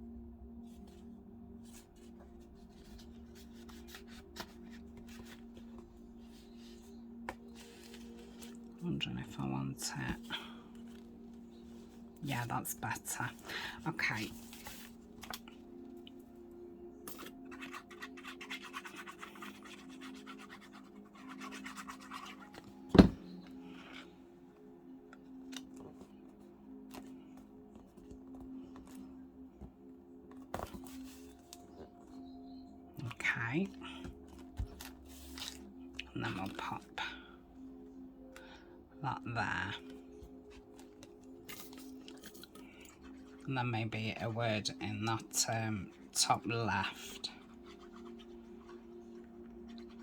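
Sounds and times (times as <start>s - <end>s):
paper rustling on a surface: 14.2s - 15.4s.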